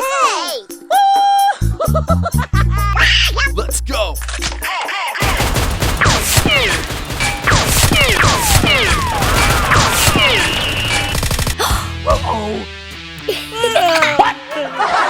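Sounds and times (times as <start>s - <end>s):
rapid toy gun shots: 5.2s - 11.6s.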